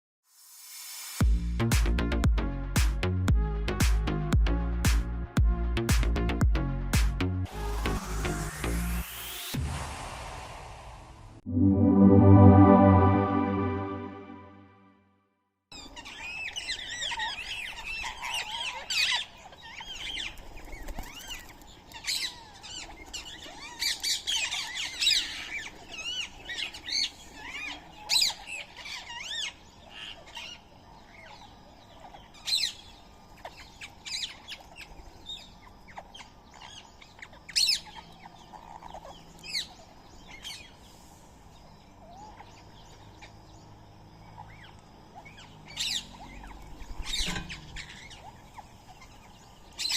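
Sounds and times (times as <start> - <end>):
birds squawking and chirping: 15.8 - 40.9, 42.0 - 49.9.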